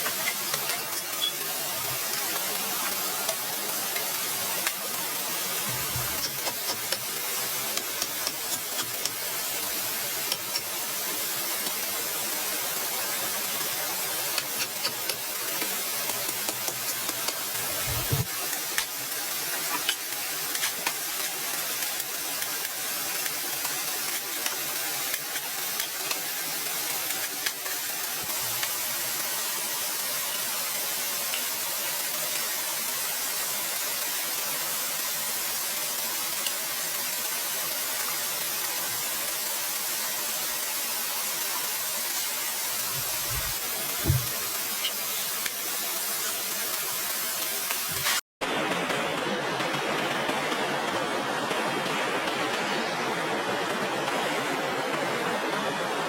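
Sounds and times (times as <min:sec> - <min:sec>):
steady hiss: 0:00.0 - 0:48.3
short low thump: 0:43.0 - 0:44.4.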